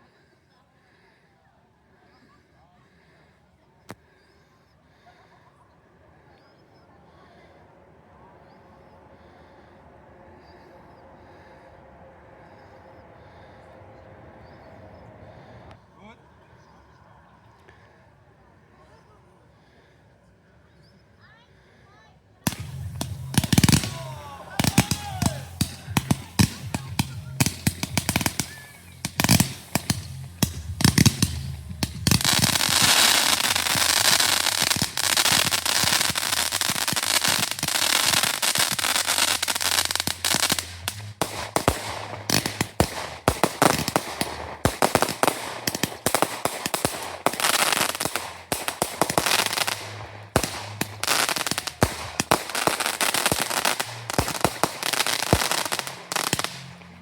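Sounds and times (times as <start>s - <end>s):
fireworks bangs and crackle: 22.5s - 57.0s.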